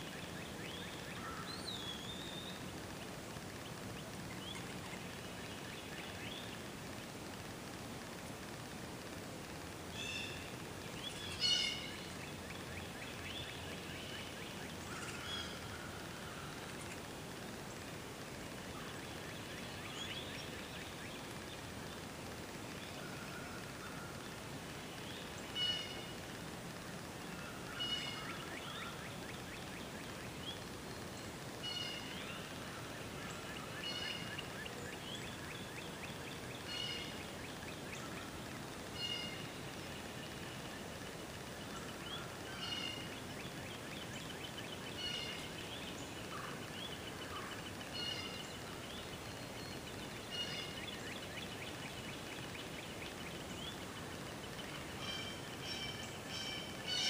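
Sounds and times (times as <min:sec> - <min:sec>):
steady background hiss: 0:00.0 - 0:57.0
bird call with trill: 0:39.0 - 0:39.5, 0:50.3 - 0:50.8, 0:55.0 - 0:57.0.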